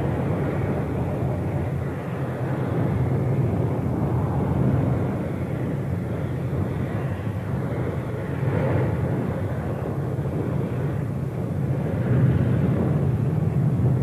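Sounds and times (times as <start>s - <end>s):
lava fountain roaring: 0.0s - 14.0s.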